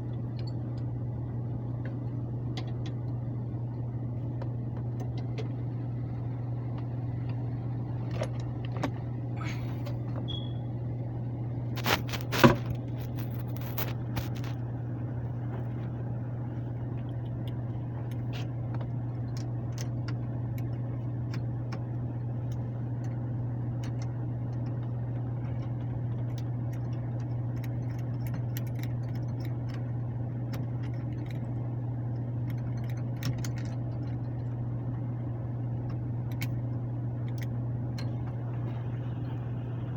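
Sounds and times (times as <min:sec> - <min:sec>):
air handler blower humming: 0:00.0 - 0:39.9.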